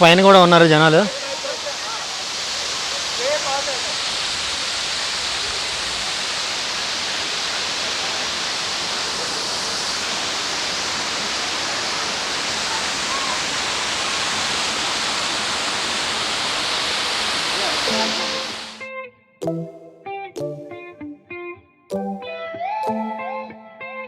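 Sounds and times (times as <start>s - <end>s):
waterfall rushing: 0.0s - 18.8s.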